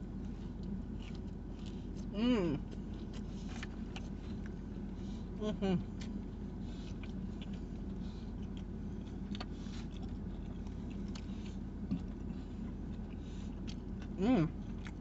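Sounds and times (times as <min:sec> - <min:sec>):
low hum: 0:00.0 - 0:15.0
person chewing crispy food: 0:00.0 - 0:15.0.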